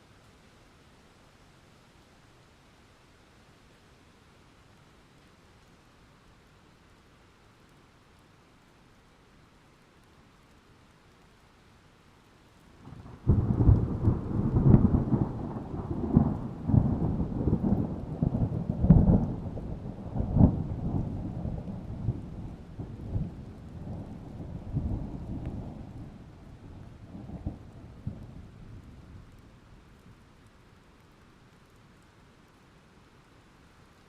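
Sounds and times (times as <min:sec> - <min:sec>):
thunderclap with rumble: 0:12.8 - 0:29.4.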